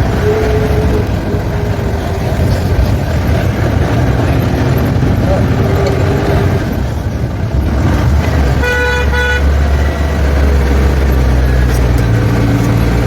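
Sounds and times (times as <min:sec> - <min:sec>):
vehicle horn: 0:00.0 - 0:02.2, 0:08.5 - 0:10.5
engine rumbling: 0:00.0 - 0:13.0.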